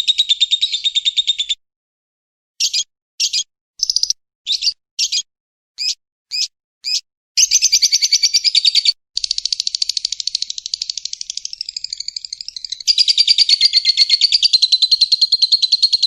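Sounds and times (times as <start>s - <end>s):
high-pitched bird chirps: 0.0s - 1.6s, 2.6s - 16.0s
rapid chattering bird trill: 2.6s - 16.0s.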